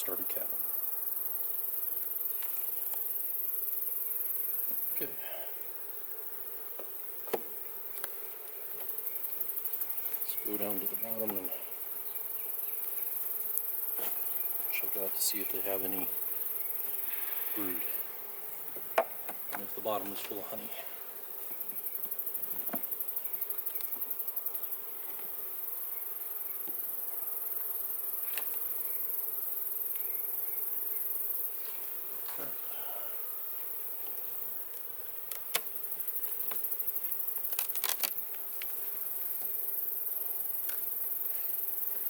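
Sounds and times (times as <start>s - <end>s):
honeybees buzzing: 0.0s - 42.0s
knocks of hive frames handled: 6.6s - 9.0s, 10.8s - 12.3s, 17.9s - 20.6s, 21.3s - 24.1s, 35.2s - 39.6s.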